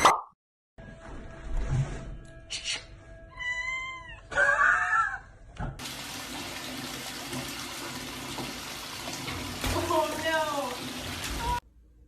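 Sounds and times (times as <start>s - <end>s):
cat meowing: 3.3s - 5.2s
tap water running: 5.8s - 11.6s.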